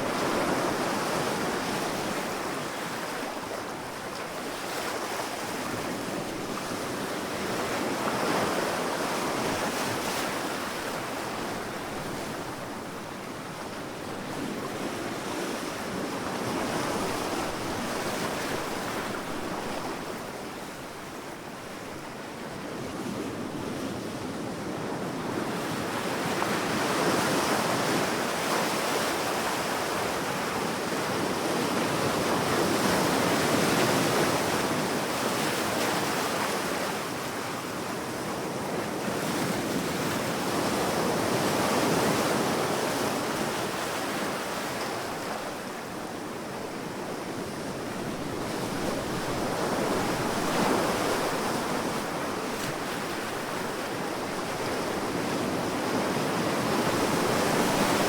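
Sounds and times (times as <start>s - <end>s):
waves washing up beach: 25.4s - 58.0s.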